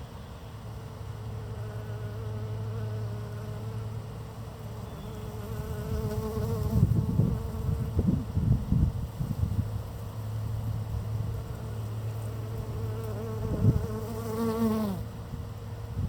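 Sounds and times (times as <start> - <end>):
bee buzzing: 1.4 - 8.1, 11.3 - 15.2.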